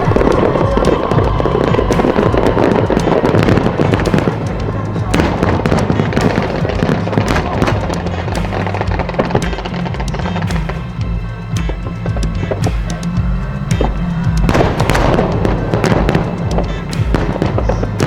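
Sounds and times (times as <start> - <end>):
fireworks bursting and crackling: 0.0 - 18.0
music with stepping bass line: 0.0 - 18.0.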